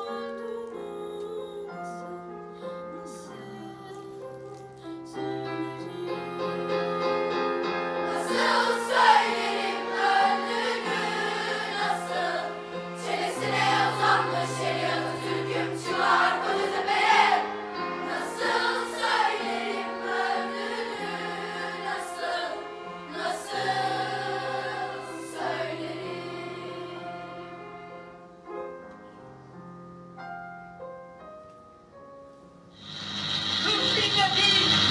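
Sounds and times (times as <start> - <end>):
piano accompaniment: 0.0 - 34.9
children's choir singing: 5.2 - 28.2.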